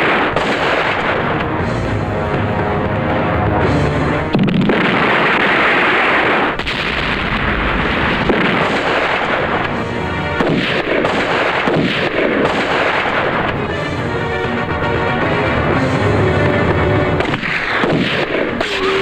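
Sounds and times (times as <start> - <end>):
film background music: 0.0 - 6.4, 8.0 - 18.9
explosion sound effects: 0.0 - 14.0
gunshots: 0.0 - 14.6, 15.7 - 19.0.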